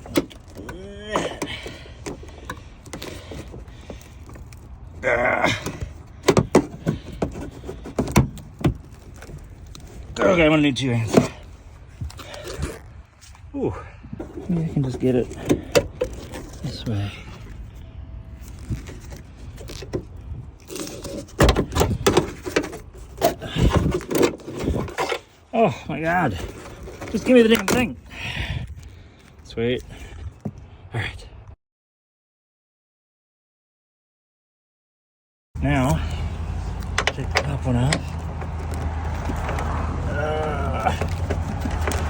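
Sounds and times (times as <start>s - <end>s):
seat belt hardware clicks: 36.6s - 40.0s.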